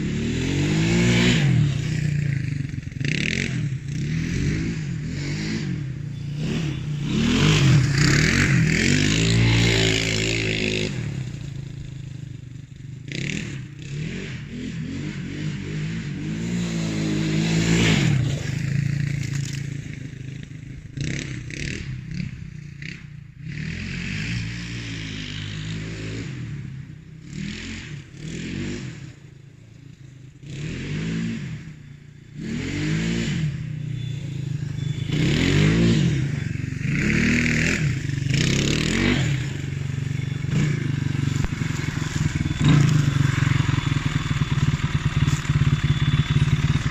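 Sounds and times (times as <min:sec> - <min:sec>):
quad bike engine revving: 0:00.0 - 0:46.9.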